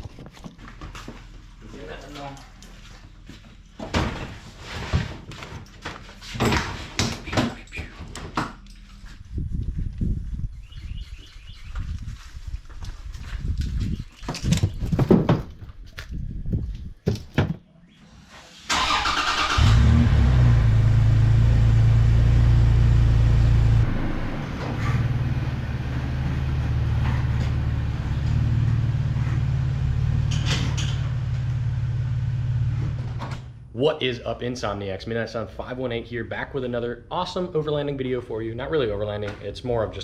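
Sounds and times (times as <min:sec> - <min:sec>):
car engine starting and running: 0:18.5 - 0:33.7.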